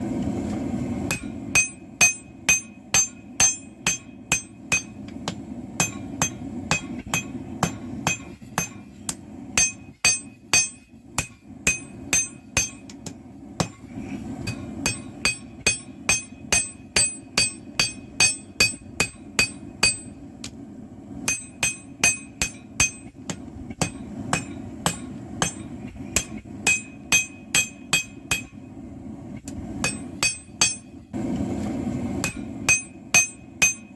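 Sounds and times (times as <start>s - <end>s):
hammer striking anvil: 1.1s - 13.8s, 14.4s - 20.2s, 21.2s - 28.6s, 29.8s - 30.9s, 32.2s - 33.9s.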